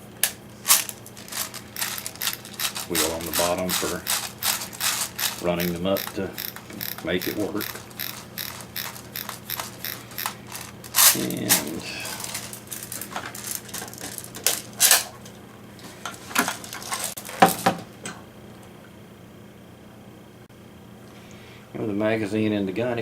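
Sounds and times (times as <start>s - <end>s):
ratcheting clicks of winding wheel: 0.7s - 11.3s.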